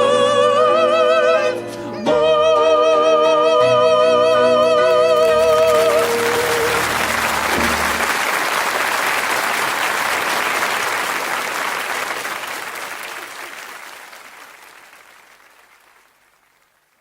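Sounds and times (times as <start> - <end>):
piano: 0.0 - 8.5
audience applause: 5.1 - 17.0.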